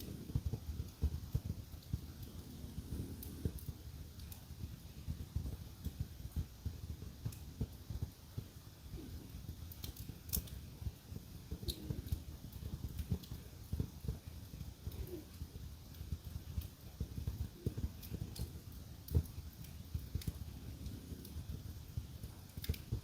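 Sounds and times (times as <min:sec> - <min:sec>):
wood fire crackling: 0:00.0 - 0:23.0
dog snoring: 0:02.3 - 0:03.7.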